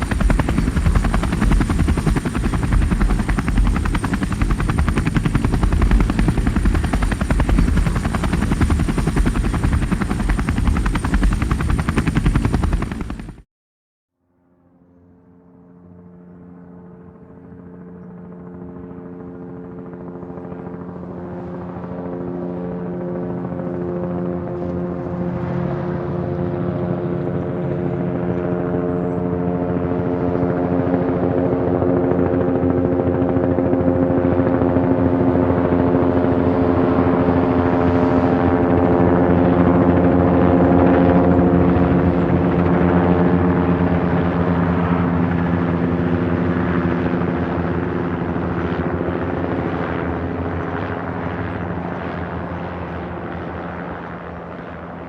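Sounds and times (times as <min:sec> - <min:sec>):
helicopter rotor chop and whine: 0:00.0 - 0:13.5, 0:15.3 - 0:55.0.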